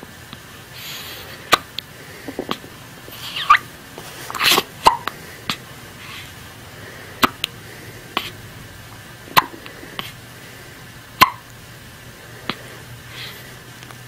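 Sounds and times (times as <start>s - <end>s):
baby hiccuping: 4.4s - 5.1s, 9.3s - 10.1s, 11.2s - 11.4s.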